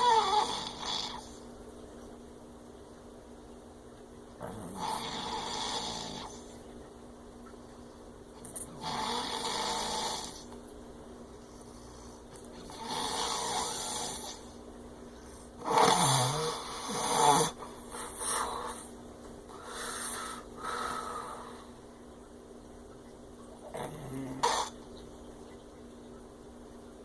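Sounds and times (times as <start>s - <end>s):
man snoring heavily: 0.0s - 1.3s, 4.5s - 6.4s, 8.8s - 10.5s, 12.7s - 14.4s, 15.6s - 17.6s
uneven breaths: 19.5s - 21.8s.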